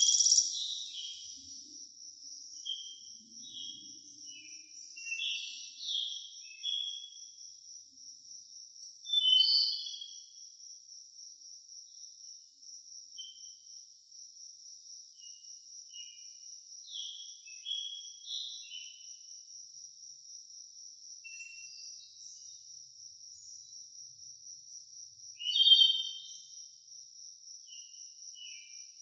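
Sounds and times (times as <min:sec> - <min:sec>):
birds chirping: 0:00.0 - 0:01.4
insects droning: 0:00.0 - 0:29.0.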